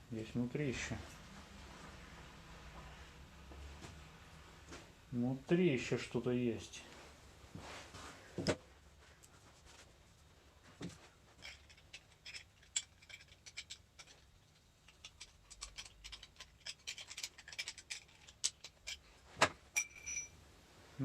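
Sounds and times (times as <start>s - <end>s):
metal parts clicking and tapping: 11.4s - 19.1s.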